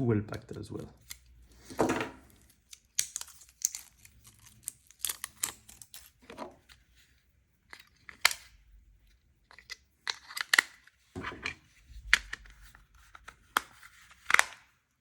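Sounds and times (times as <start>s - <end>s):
packaging clicks: 0.5s - 6.6s, 9.5s - 10.9s
packaging crinkling and rustling: 0.6s - 6.8s.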